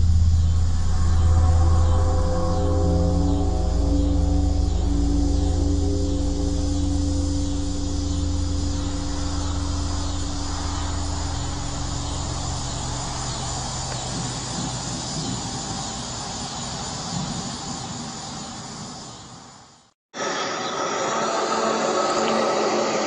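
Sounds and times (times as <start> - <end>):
low droning hum: 0.0 - 18.0
insects chirping: 0.0 - 23.0
steady hiss: 4.7 - 23.0.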